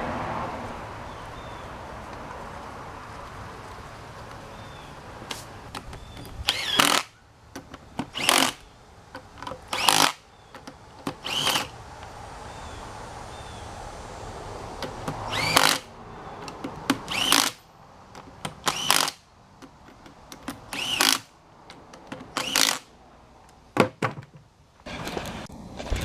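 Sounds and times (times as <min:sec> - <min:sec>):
power tool motor spinning up: 0:06.4 - 0:07.1, 0:08.1 - 0:08.7, 0:09.7 - 0:10.2, 0:11.2 - 0:11.8, 0:15.2 - 0:15.9, 0:17.1 - 0:17.6, 0:18.7 - 0:19.2, 0:20.8 - 0:21.2, 0:22.4 - 0:22.8.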